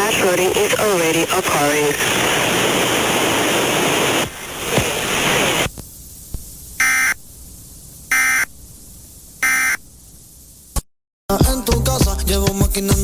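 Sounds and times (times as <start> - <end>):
static hiss: 0.0 - 10.9
loud data bursts: 6.7 - 7.3, 8.0 - 8.6, 9.4 - 9.8.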